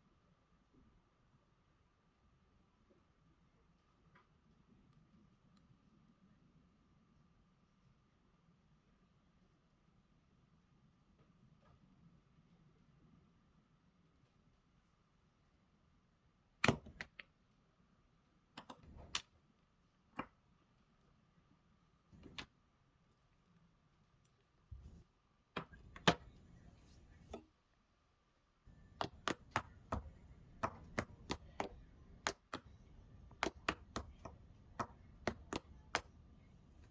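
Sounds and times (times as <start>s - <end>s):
sharp taps and clicks: 28.7s - 36.9s.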